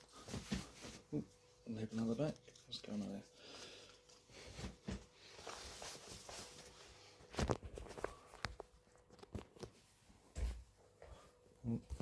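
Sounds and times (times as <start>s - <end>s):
cotton t-shirt rustling: 0.0s - 8.3s.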